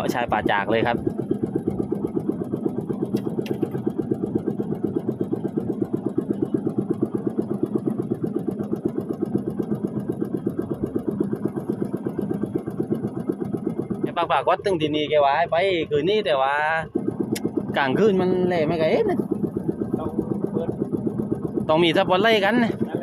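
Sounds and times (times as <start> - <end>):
small engine running: 0.0 - 23.0.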